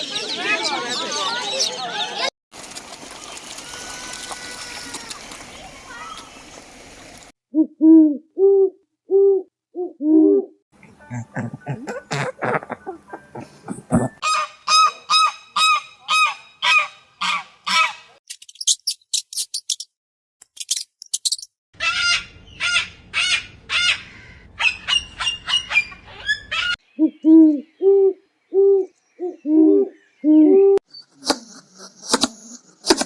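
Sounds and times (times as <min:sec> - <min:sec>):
low repeated hoots: 0:07.5 - 0:10.6, 0:27.0 - 0:30.8.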